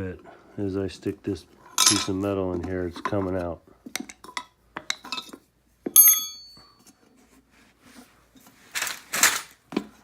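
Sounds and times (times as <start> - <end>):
metal tool clinking: 1.8 - 2.2, 4.4 - 6.8.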